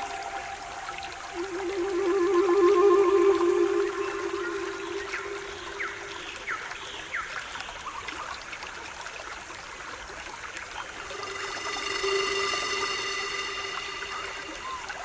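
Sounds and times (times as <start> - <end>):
stream water trickling: 0.0 - 15.0.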